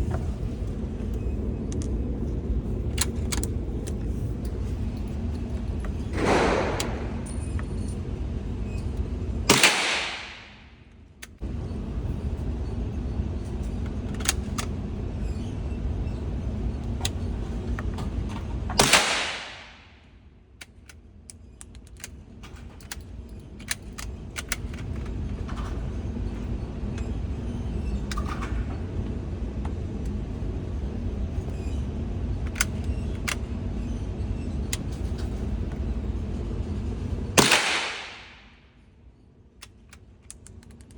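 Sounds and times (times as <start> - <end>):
steady background rumble: 0.0 - 40.9
rifle shots: 9.5 - 10.6, 18.8 - 19.8, 37.4 - 38.4.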